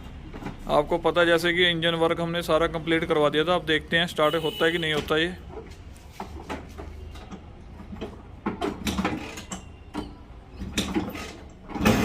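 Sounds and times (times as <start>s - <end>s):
scooter engine starting: 11.0s - 12.0s.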